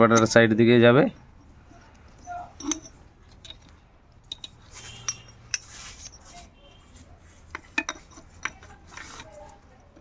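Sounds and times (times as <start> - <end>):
metal parts clinking: 0.0 - 9.4.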